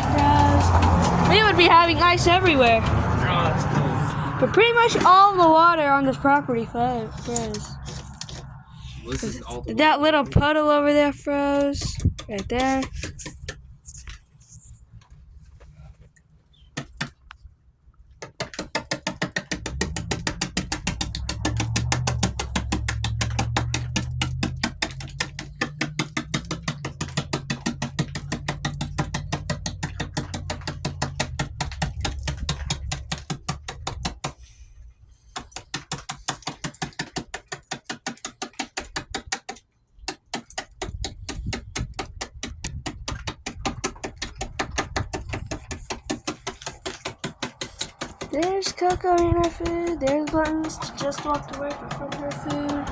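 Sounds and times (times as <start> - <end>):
fast ticking beat: 0.0 - 3.0, 47.1 - 52.9.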